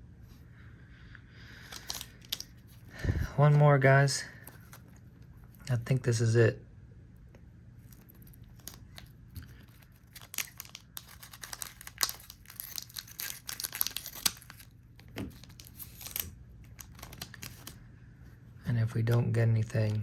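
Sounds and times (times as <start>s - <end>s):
foil wrapper tearing and crinkling: 7.9s - 17.8s.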